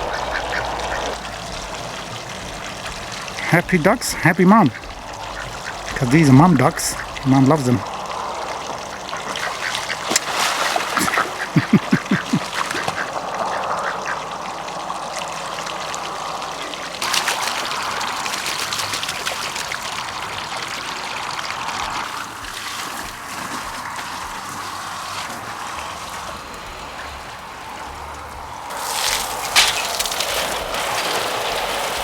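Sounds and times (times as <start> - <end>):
ducks quacking: 0.0 - 14.8
water running into pond: 0.0 - 32.0.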